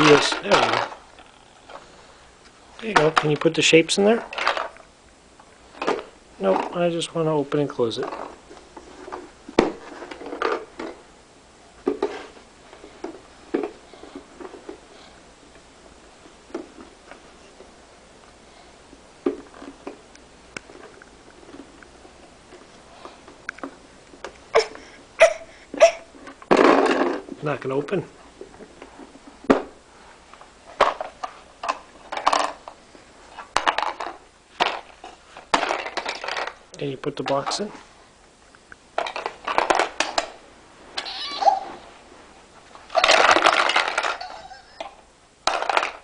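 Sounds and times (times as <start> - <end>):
toy tools knocking and clattering: 0.0 - 1.0, 33.6 - 34.8, 35.5 - 36.6, 43.0 - 46.0.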